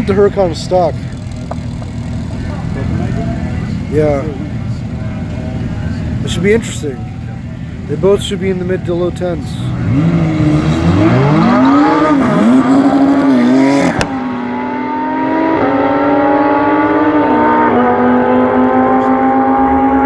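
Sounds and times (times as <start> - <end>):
car engines revving: 0.0 - 20.0
cars accelerating hard: 9.6 - 20.0.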